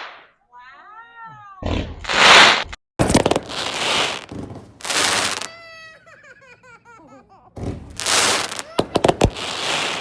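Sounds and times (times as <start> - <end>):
firework crackling bursts: 2.1 - 5.6, 7.9 - 10.0
firework whistling: 3.4 - 5.5, 8.0 - 10.0.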